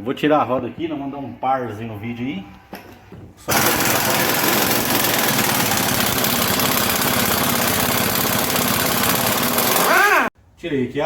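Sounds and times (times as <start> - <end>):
impact wrench rattling: 3.5 - 10.1.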